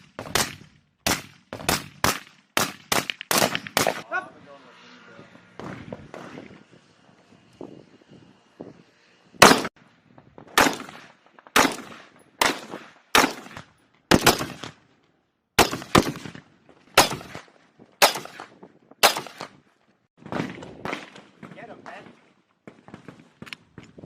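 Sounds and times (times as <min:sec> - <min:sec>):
rifle shots echoing: 0:00.0 - 0:04.0, 0:09.4 - 0:09.8, 0:10.6 - 0:14.8, 0:15.6 - 0:16.4, 0:17.0 - 0:19.6.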